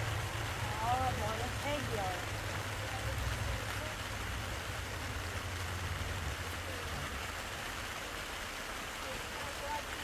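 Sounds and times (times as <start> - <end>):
steady rain falling: 0.0 - 10.0.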